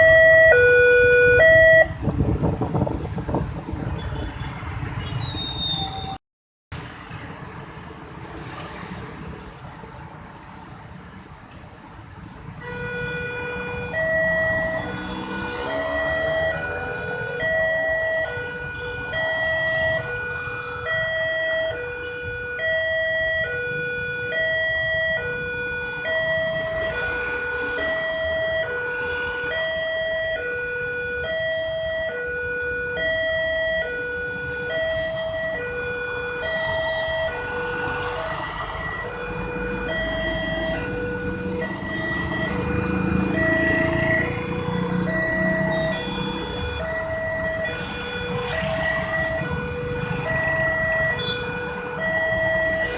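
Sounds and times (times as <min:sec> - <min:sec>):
two-tone level-crossing siren: 0:00.0 - 0:02.0, 0:12.6 - 0:52.9
road traffic: 0:00.0 - 0:52.9.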